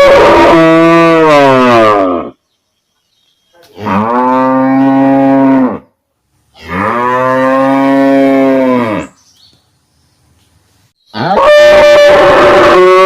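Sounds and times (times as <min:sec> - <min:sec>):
cow mooing: 0:00.0 - 0:02.4, 0:03.8 - 0:05.9, 0:06.6 - 0:09.1, 0:11.2 - 0:13.0.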